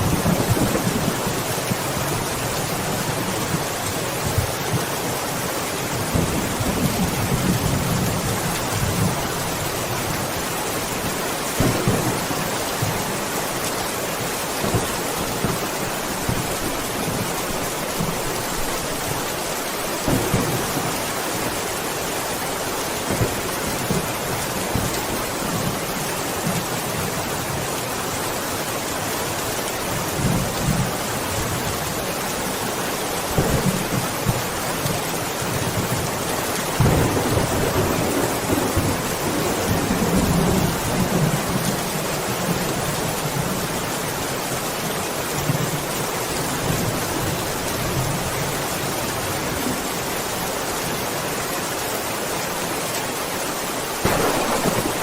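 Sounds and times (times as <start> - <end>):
heavy rain hiss: 0.0 - 55.0
thunder rumbling: 20.0 - 21.7, 54.0 - 55.0.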